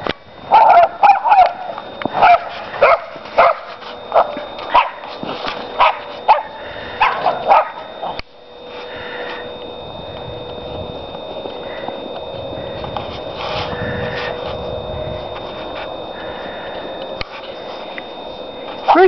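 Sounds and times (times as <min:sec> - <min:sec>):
dog barking: 0:00.5 - 0:05.0, 0:05.8 - 0:07.9.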